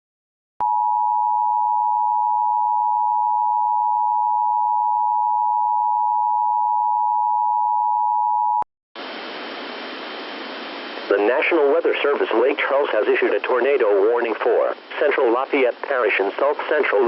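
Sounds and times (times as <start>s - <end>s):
two-tone alarm: 0.6s - 8.6s.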